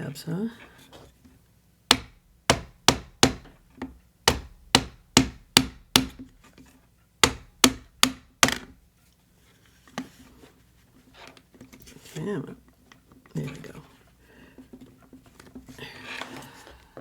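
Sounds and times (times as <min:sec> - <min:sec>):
sharp taps on wood: 0:01.9 - 0:06.4, 0:07.2 - 0:08.8.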